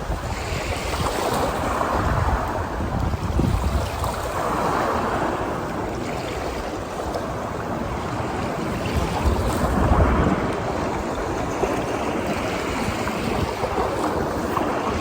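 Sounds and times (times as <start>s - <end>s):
ocean surf washing onto beach: 0.0s - 15.0s
wind gusting on microphone: 0.0s - 15.0s.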